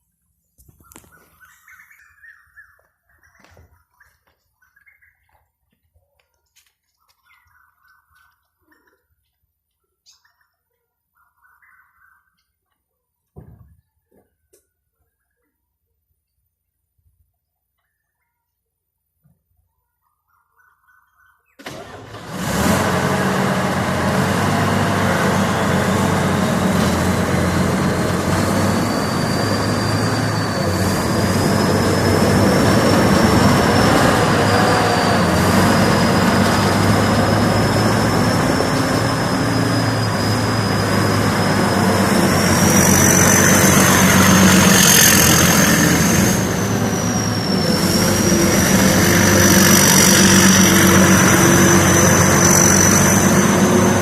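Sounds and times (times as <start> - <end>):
combine harvester diesel engine: 21.6 - 54.0
high whine rising in pitch: 23.1 - 54.0.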